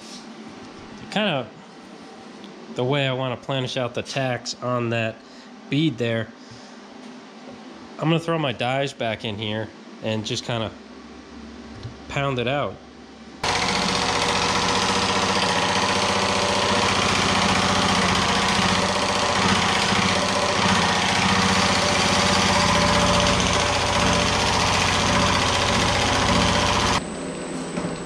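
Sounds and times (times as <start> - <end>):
sheet metal machine pounding: 13.4 - 27.0
motor hum: 13.4 - 28.0.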